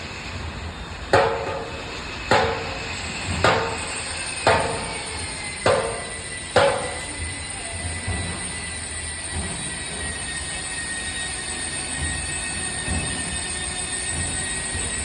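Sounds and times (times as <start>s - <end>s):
steady low hum: 1.1s - 7.5s
screw press metallic blows: 1.2s - 7.4s.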